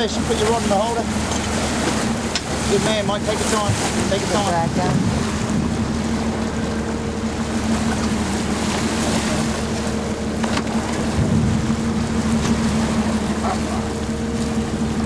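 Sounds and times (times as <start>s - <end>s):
boat engine humming: 0.0s - 15.0s
water: 0.0s - 15.0s
wind: 0.0s - 15.0s.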